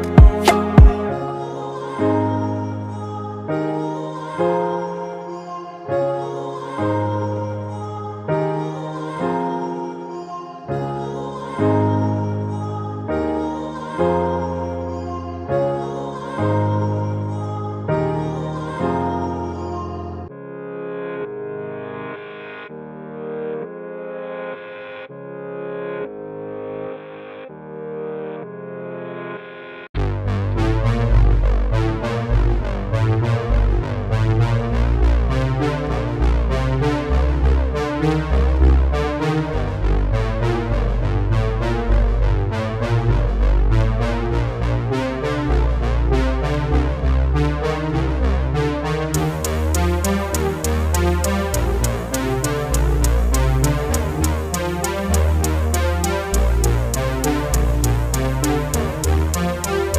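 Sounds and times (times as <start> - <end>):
electronic music with beat: 0.0 - 1.2, 49.1 - 59.9
electronic music with synthesizer: 0.0 - 5.2, 17.8 - 59.9.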